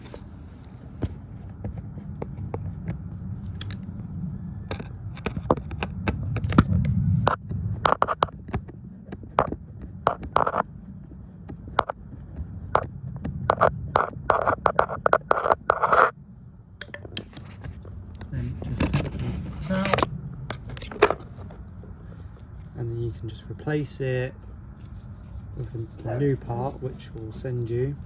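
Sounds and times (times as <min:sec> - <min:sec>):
low handling rumble: 0:16.1 - 0:28.0.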